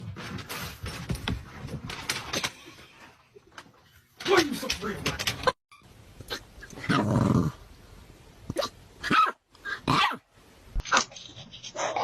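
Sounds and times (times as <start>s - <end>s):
dog growling: 6.8s - 7.6s.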